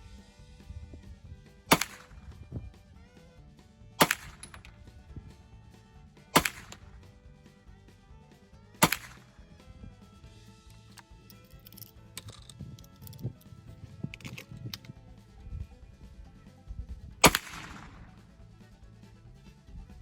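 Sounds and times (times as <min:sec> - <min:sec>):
background music: 0:00.0 - 0:20.0
carbine gunshots: 0:01.6 - 0:02.7, 0:04.0 - 0:05.5, 0:06.1 - 0:07.2, 0:08.7 - 0:09.7, 0:17.2 - 0:18.3.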